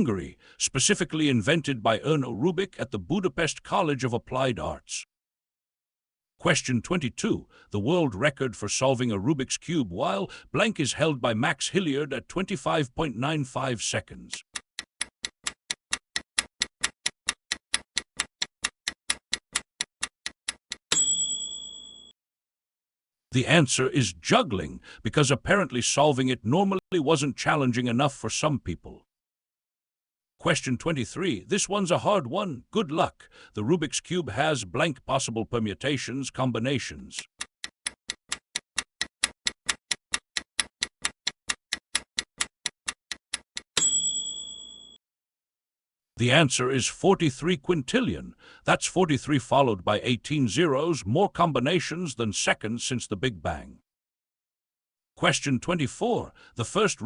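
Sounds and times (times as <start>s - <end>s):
clock ticking: 14.3s - 21.0s, 37.2s - 43.9s
ringing chime: 20.9s - 22.1s, 43.8s - 45.0s.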